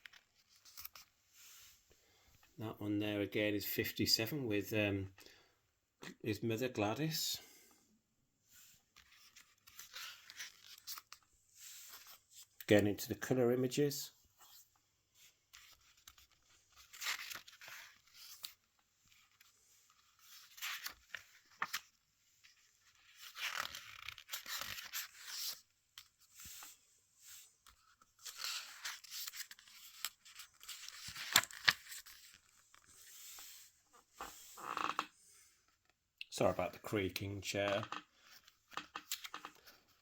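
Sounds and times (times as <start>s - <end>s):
paper pages rustling: 0.0s - 1.6s, 9.0s - 12.7s, 15.2s - 35.1s, 37.6s - 40.0s
chair creaking: 34.2s - 35.1s.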